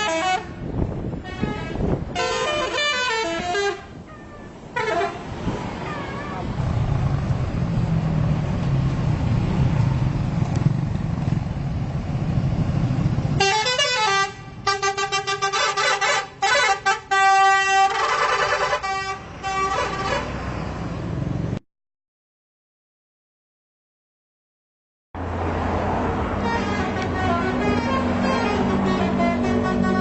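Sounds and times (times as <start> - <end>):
bus musical air horn: 0.0 - 6.4, 13.4 - 20.5, 26.2 - 30.0.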